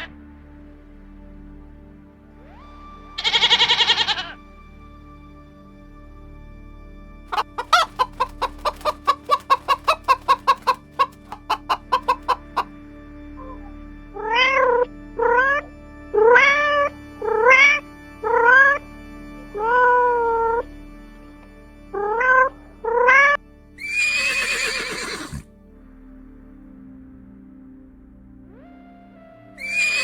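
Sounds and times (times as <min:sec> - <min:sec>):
faint music drone: 0:00.0 - 0:30.0
rising meow-like calls: 0:02.5 - 0:04.4, 0:29.6 - 0:30.0
animal chirping calls: 0:03.2 - 0:04.4, 0:07.3 - 0:12.7.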